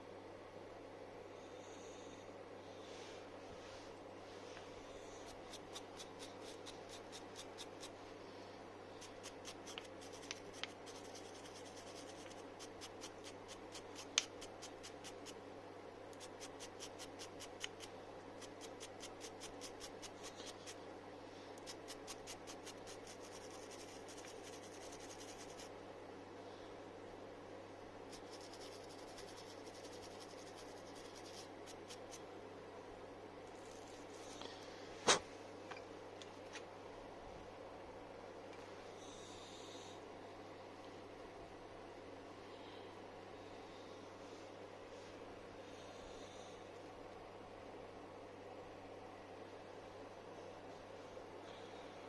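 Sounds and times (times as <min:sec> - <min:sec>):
steady low hum: 0:00.0 - 0:52.0
scrubbing strokes by hand: 0:02.9 - 0:08.0, 0:09.0 - 0:15.4, 0:16.2 - 0:20.8, 0:21.6 - 0:25.7, 0:28.1 - 0:32.2.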